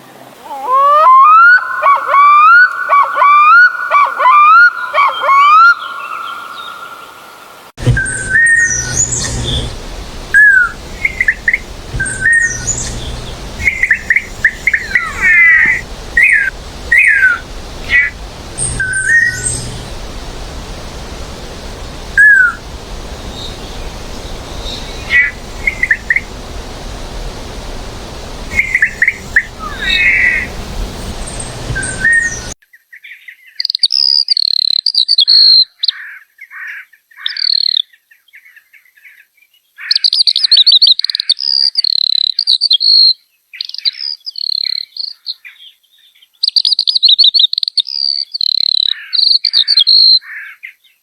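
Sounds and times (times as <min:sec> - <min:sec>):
songbird singing: 0:04.7 - 0:34.0
steady background hiss: 0:06.2 - 0:32.6.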